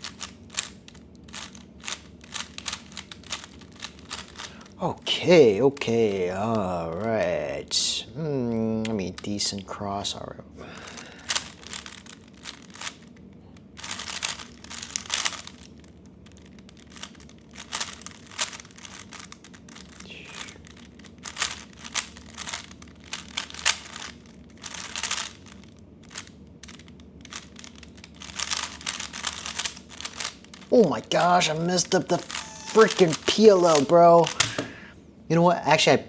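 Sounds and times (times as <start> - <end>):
puzzle cube plastic clicking: 0.0 - 4.8, 5.6 - 7.8, 10.9 - 34.8.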